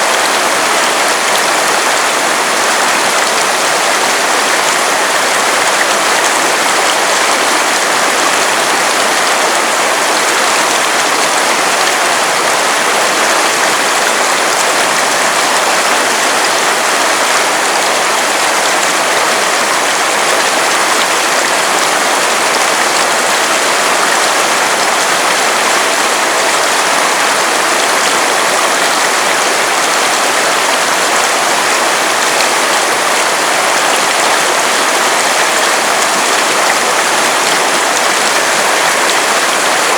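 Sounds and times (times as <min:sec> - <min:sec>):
river water rushing over stones: 0:00.0 - 0:39.9.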